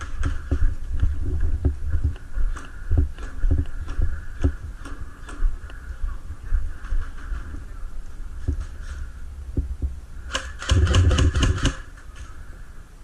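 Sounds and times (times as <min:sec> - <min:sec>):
footsteps: 0:00.0 - 0:10.0.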